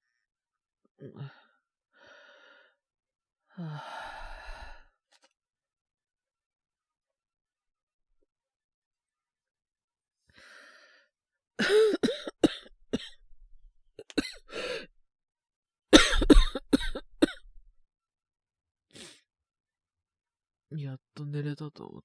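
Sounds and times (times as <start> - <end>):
faint breath: 2.0 - 2.8, 3.7 - 4.8, 10.3 - 11.1, 14.4 - 14.9
man coughing: 11.6 - 13.1, 14.0 - 14.8, 16.0 - 17.4.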